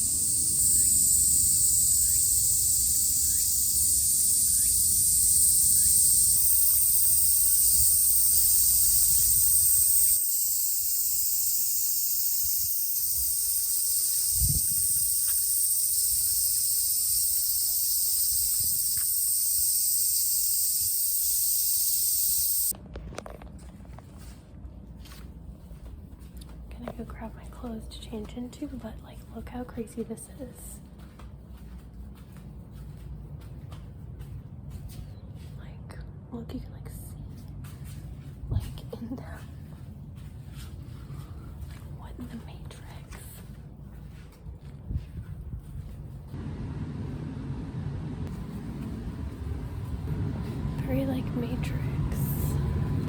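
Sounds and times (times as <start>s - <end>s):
shrill insect drone: 0.0s - 22.7s
wind rumble on microphone: 14.1s - 15.3s, 38.2s - 53.0s.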